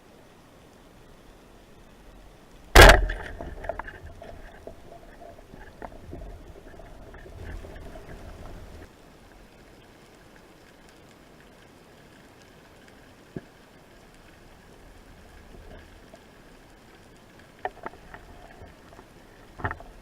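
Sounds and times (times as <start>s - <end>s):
speargun firing underwater: 2.8s - 4.0s.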